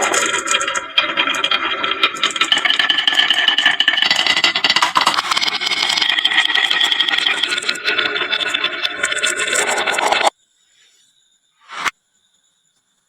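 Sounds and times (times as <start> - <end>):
marbles rattling down wooden run: 0.0 - 10.3.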